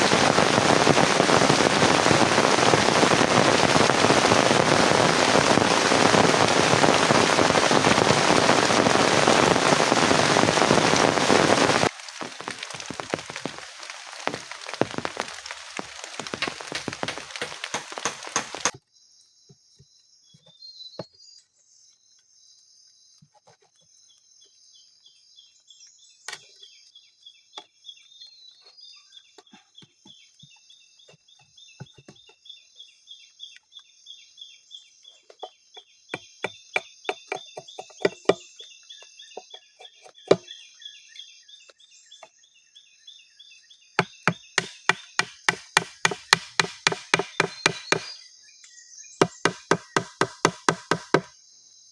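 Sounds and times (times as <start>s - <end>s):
sharp chopping knocks: 16.2s - 18.7s, 44.0s - 48.2s, 49.2s - 51.3s.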